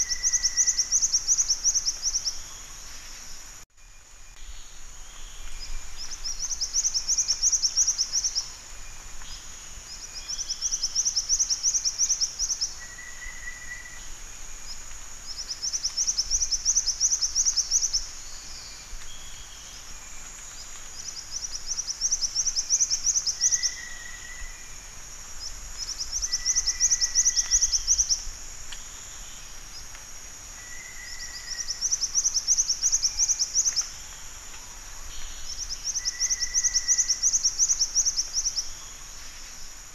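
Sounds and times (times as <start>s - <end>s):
high-pitched hiss: 0.0s - 39.9s.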